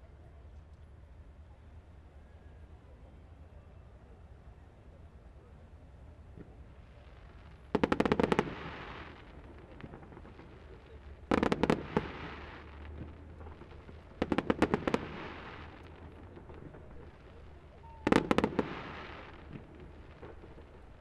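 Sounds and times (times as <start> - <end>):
fireworks bangs: 7.7 - 21.0.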